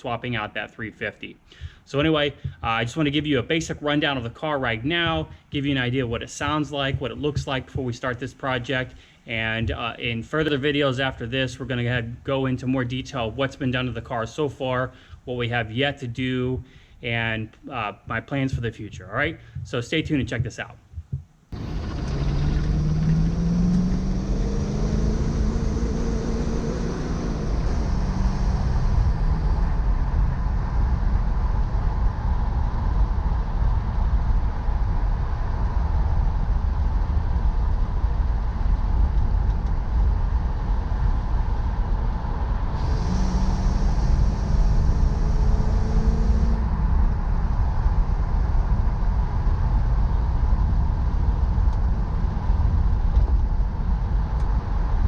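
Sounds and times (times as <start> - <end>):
car engine rumbling: 21.0 - 35.4, 37.1 - 55.0.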